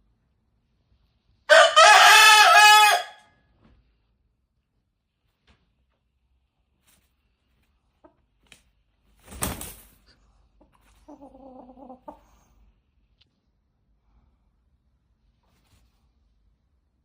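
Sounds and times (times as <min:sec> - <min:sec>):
chickens clucking: 0:10.5 - 0:12.7.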